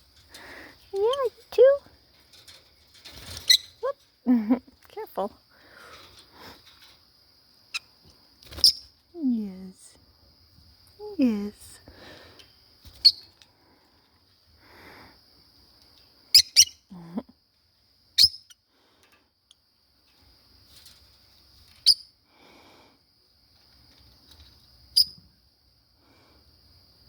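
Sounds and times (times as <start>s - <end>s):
lovebirds chirping: 16.3s - 16.9s.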